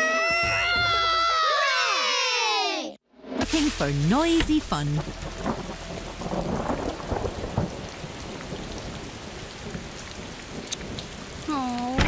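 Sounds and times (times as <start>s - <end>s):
cartoon rain falling: 3.4s - 12.0s
low thunder rumble: 3.4s - 12.0s.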